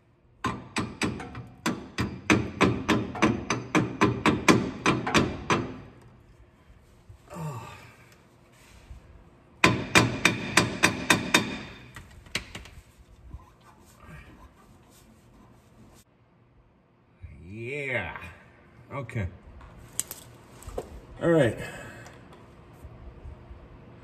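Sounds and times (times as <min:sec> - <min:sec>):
hammer tapping metal: 0:00.4 - 0:05.9, 0:09.6 - 0:12.0.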